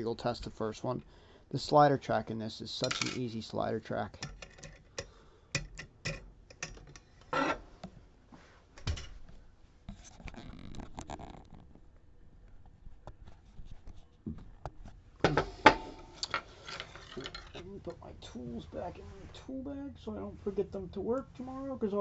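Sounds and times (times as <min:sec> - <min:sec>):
lock-picking tools clicking: 0:04.2 - 0:07.2.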